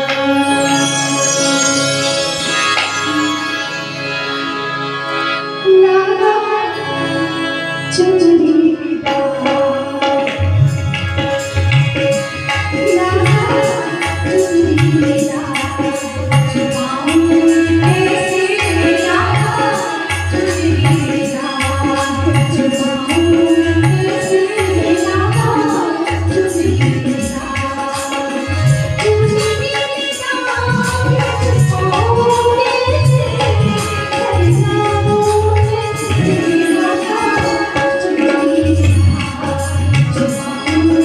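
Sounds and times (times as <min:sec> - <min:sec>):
hand drum rhythm: 0:09.4 - 0:41.0.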